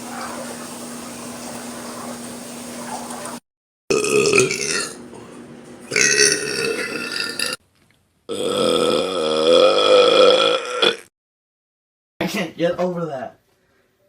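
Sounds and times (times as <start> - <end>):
loud belching: 3.9 - 5.0, 5.9 - 7.6, 8.3 - 11.1.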